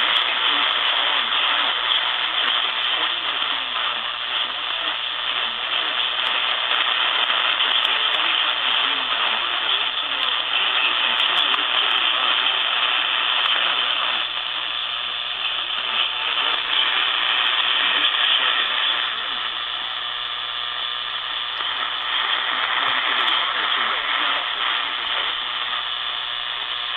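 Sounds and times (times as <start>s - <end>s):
faint broadcast voice: 0.0s - 26.9s
radio static hiss: 0.0s - 26.9s.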